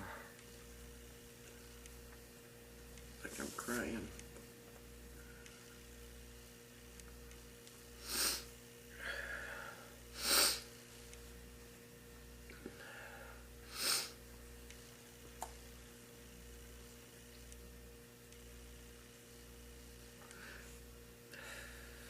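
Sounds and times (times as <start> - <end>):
low electrical hum: 0.0 - 22.0
person sniffing: 8.0 - 8.5, 10.2 - 10.7, 13.7 - 14.2
faint breathing: 8.0 - 10.7, 12.6 - 14.2, 20.2 - 22.0.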